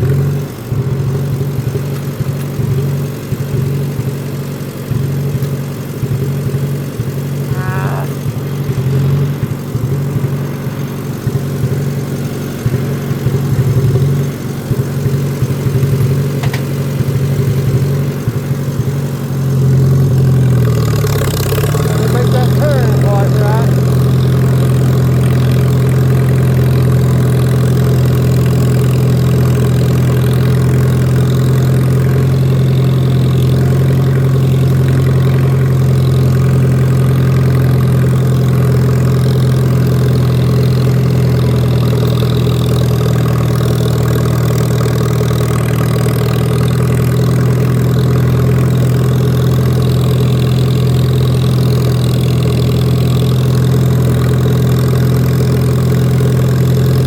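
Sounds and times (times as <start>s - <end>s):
lawn mower engine running: 0.0s - 57.0s.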